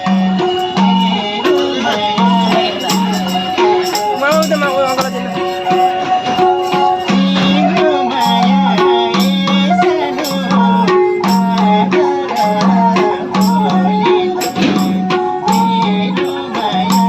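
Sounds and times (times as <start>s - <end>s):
bowed string melody: 0.0s - 17.0s
hand drum rhythm: 0.0s - 17.0s.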